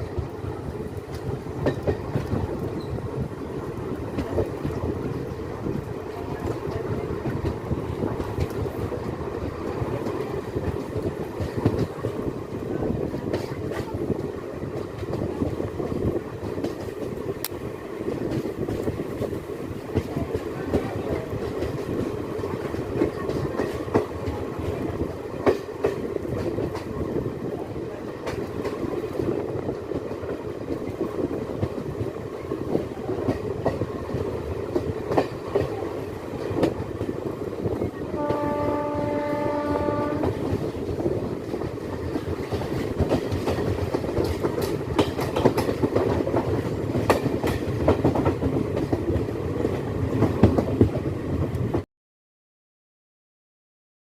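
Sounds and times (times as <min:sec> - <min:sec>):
train rumbling on track: 0:00.0 - 0:51.8
locomotive horn blast: 0:38.1 - 0:40.5
wheels clicking over rail joints: 0:40.2 - 0:51.7.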